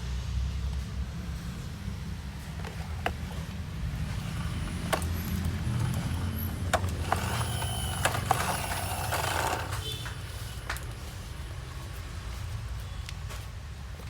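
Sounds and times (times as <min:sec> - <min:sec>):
rasping grinding noise: 0:02.5 - 0:10.7
plastic toy clicks and knocks: 0:04.1 - 0:11.0.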